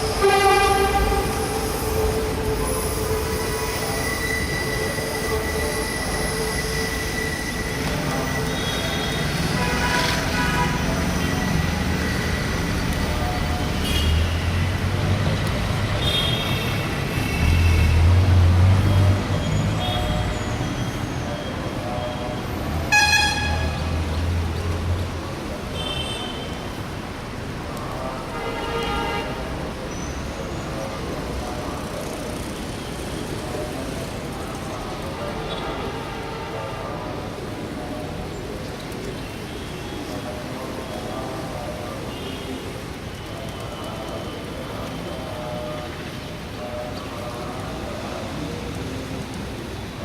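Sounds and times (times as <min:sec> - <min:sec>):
traffic engines rumbling: 0:00.0 - 0:50.0
vehicle horns honking: 0:00.1 - 0:01.6, 0:22.9 - 0:23.9, 0:28.3 - 0:29.4.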